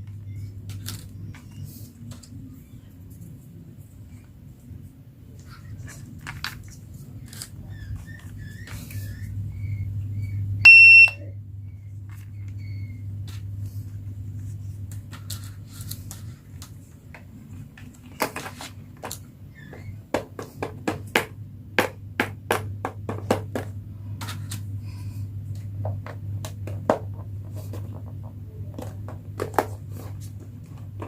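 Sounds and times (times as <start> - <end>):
toy electronic beep: 10.7 - 11.2.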